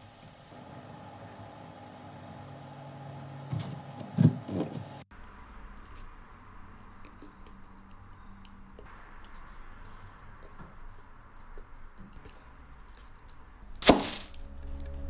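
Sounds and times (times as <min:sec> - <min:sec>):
heavy thumps: 0:13.8 - 0:14.4.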